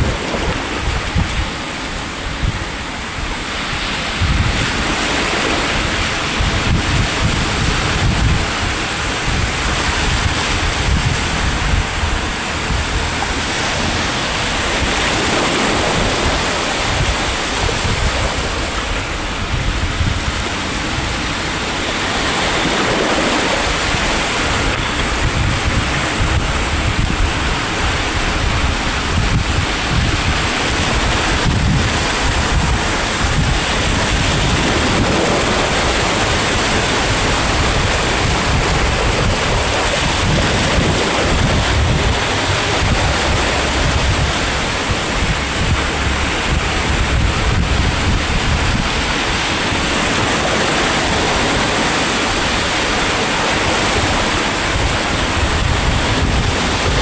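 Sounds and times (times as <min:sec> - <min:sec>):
sea waves breaking on shore: 0:00.0 - 0:57.0
wind buffeting microphone: 0:00.0 - 0:57.0.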